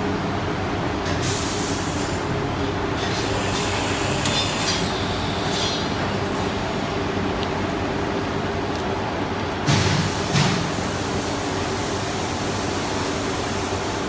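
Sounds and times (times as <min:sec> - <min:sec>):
machine mechanical hum: 0:00.0 - 0:14.0.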